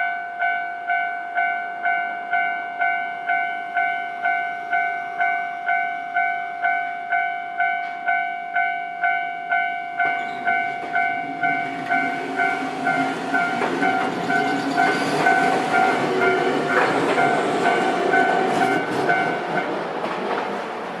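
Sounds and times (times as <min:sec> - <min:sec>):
level crossing bell clanging: 0:00.0 - 0:19.6
train passing: 0:02.3 - 0:21.0
wheels clacking over rail joints: 0:10.0 - 0:21.0.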